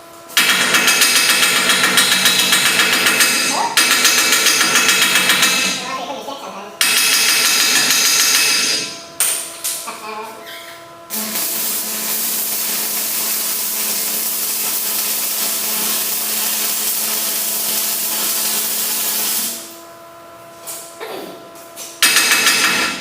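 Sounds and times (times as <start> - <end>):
arc welder hissing: 0.4 - 5.9, 6.8 - 9.0, 11.1 - 19.9, 22.0 - 23.0.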